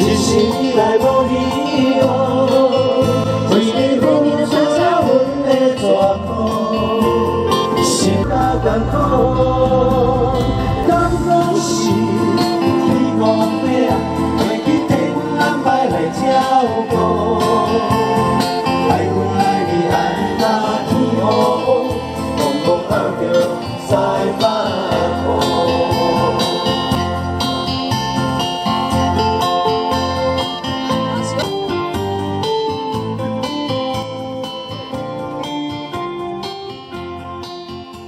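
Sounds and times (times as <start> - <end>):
person singing: 0.0 - 26.9
guitar: 0.0 - 38.0.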